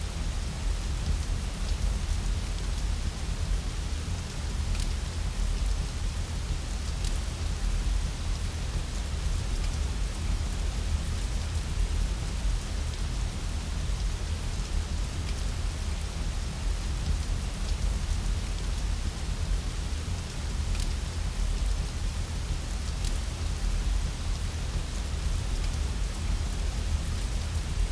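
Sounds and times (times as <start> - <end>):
steady rain falling: 0.0 - 27.9.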